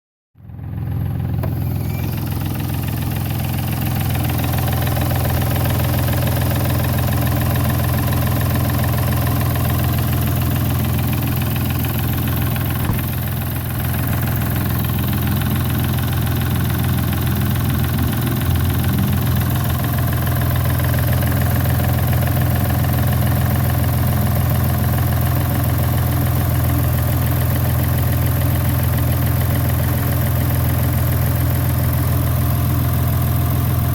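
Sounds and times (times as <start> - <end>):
car engine idling: 0.4 - 33.9
metallic engine knock: 8.0 - 20.4.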